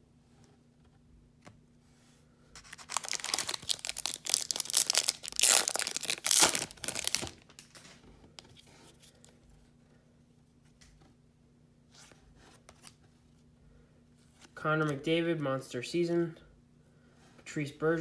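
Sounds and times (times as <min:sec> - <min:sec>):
wrapper tearing and crinkling: 0:02.6 - 0:07.8
cards being handled: 0:02.6 - 0:08.5.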